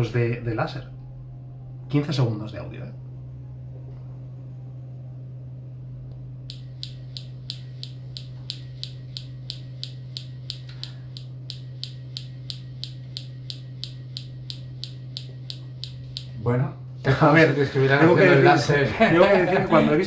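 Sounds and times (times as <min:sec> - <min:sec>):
steady low hum: 0:00.0 - 0:20.0
sharp laser clicks: 0:06.5 - 0:16.4.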